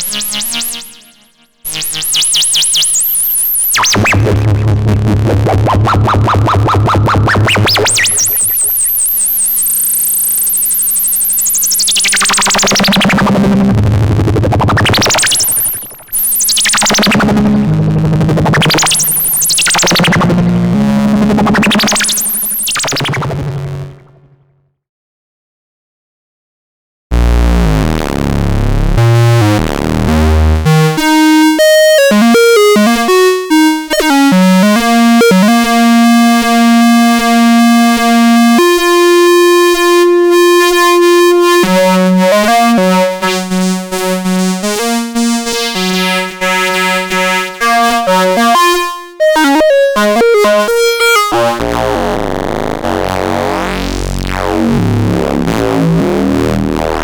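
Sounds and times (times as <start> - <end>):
analog synthesizer playing: 0.0 - 24.5, 27.1 - 57.0.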